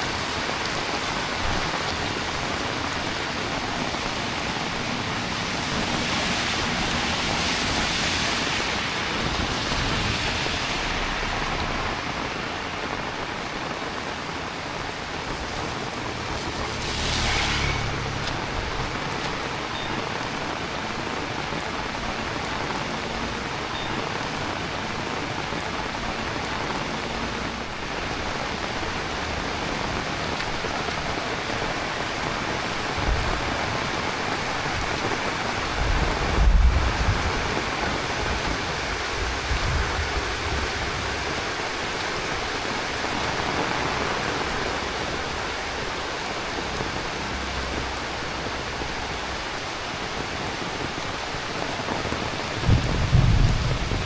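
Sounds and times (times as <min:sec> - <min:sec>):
heavy rain falling: 0:00.0 - 0:54.0
low thunder rumbles: 0:34.7 - 0:41.7, 0:52.1 - 0:54.0.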